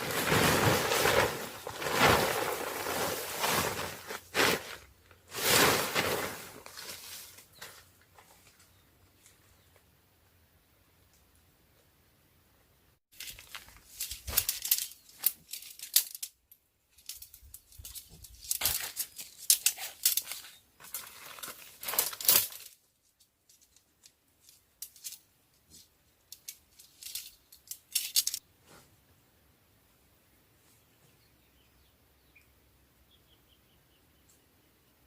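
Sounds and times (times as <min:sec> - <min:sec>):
rustling crinkling handling noise: 0:00.0 - 0:09.4, 0:13.1 - 0:16.3, 0:16.9 - 0:28.4.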